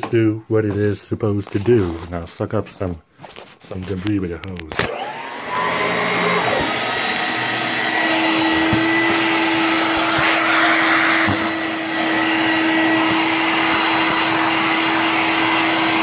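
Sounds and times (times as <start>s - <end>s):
vacuum cleaner running: 4.7s - 16.0s.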